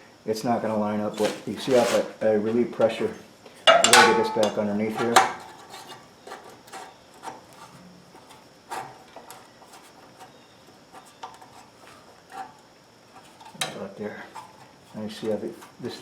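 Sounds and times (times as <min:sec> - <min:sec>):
light scraping: 0:01.0 - 0:03.1.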